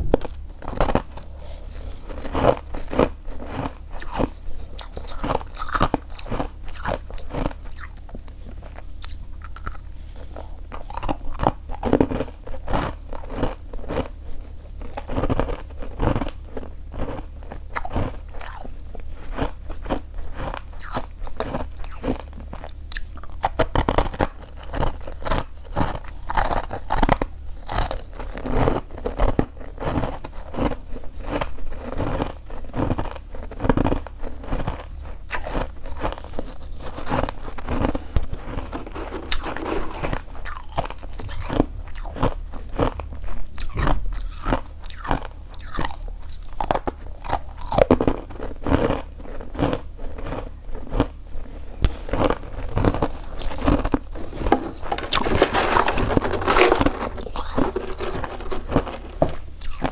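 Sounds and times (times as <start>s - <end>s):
chewing crunchy frost: 0.1s - 59.9s.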